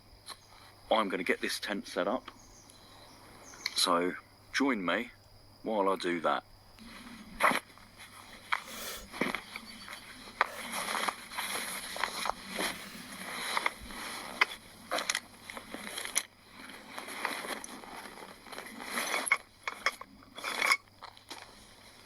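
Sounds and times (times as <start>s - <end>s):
canvas tent rustling and scraping: 10.5s - 19.4s.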